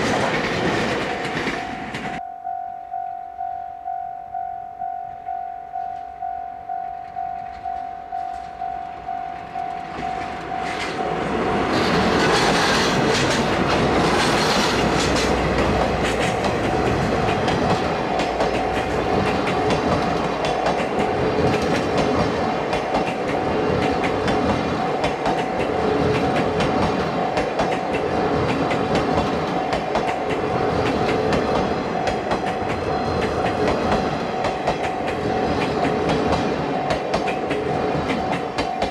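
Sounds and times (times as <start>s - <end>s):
train wheels clacking over rail joints: 0.0s - 2.2s, 9.9s - 38.9s
level-crossing warning bell: 1.3s - 12.2s, 30.9s - 38.9s.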